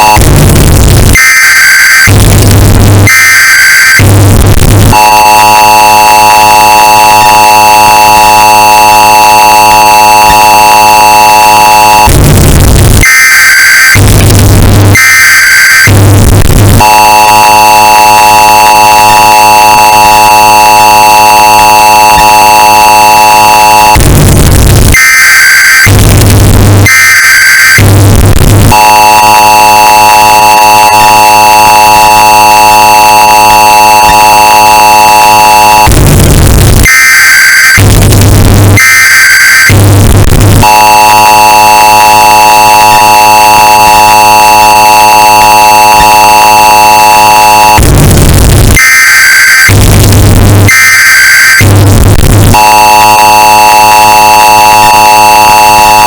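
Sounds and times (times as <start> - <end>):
distorted screeching data bursts: 3.1 - 14.2, 14.8 - 28.0, 28.6 - 56.0
two-tone attention signal: 4.9 - 12.2, 16.7 - 24.0, 28.6 - 36.0, 37.0 - 47.9, 49.4 - 56.0.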